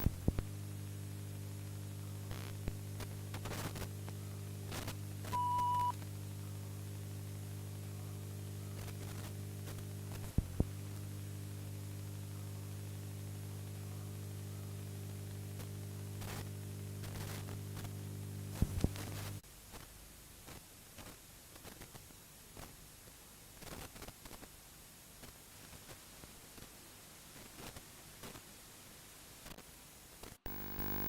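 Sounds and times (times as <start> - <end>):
static hiss: 0.0 - 31.0
short steady beep: 5.4 - 5.9
low buzz: 30.5 - 31.0.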